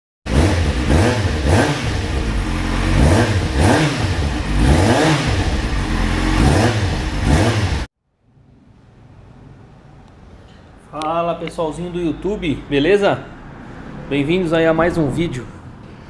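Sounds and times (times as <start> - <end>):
motorcycle engine revving: 0.3 - 7.9.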